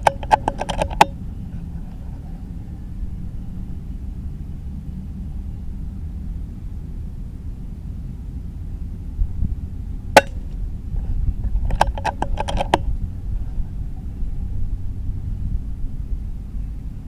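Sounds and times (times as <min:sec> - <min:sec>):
metallic clicks of rifle action: 0:00.0 - 0:01.2, 0:11.6 - 0:12.8
wind on microphone: 0:00.0 - 0:17.0.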